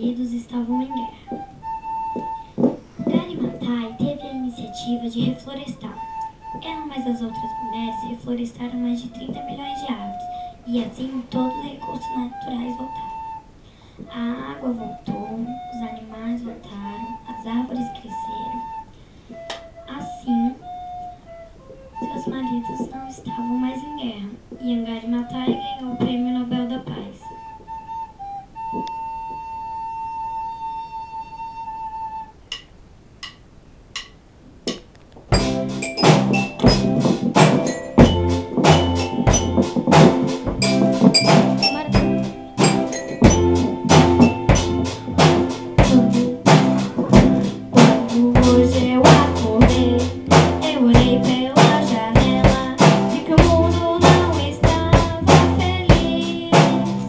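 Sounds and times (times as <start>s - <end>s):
band playing with drums: 35.3s - 57.0s
held high note: 35.4s - 47.7s.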